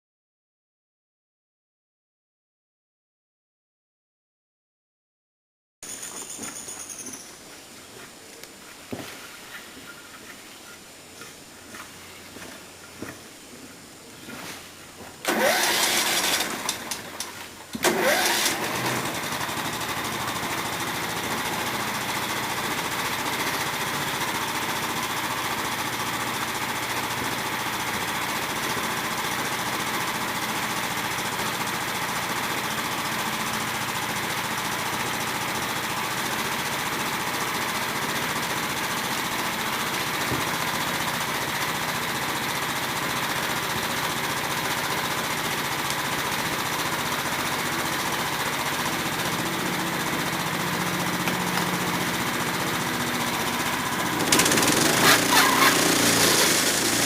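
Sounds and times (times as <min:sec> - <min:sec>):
engine starting and running: 0:14.2 - 0:57.0.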